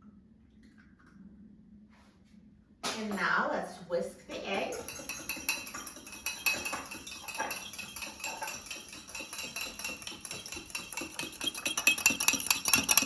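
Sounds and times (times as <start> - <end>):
utensil clinking against mug: 4.3 - 13.0.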